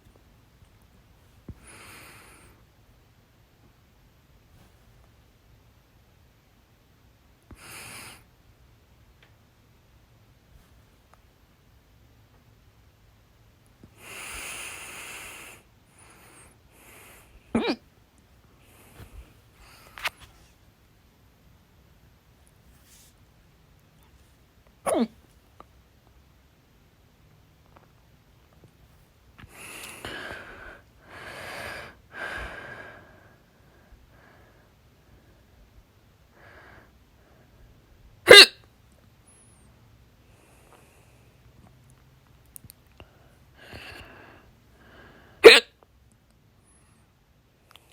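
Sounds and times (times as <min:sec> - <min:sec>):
faint breaths: 0:01.4 - 0:02.7, 0:13.8 - 0:17.5, 0:18.5 - 0:20.6, 0:28.9 - 0:37.9, 0:39.3 - 0:41.6, 0:42.9 - 0:45.4
breathy hiss: 0:01.6 - 0:02.6, 0:13.9 - 0:17.5, 0:29.5 - 0:34.8
woman hiccuping: 0:17.6 - 0:17.8, 0:24.9 - 0:25.2, 0:38.3 - 0:38.6, 0:45.4 - 0:45.7
woman breathing heavily: 0:29.4 - 0:35.6, 0:36.3 - 0:37.8, 0:43.0 - 0:45.4.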